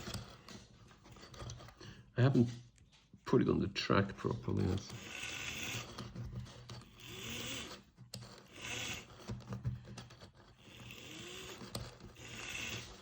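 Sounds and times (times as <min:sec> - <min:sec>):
model locomotive whirring: 0:04.6 - 0:06.1, 0:06.8 - 0:09.3, 0:10.6 - 0:13.0.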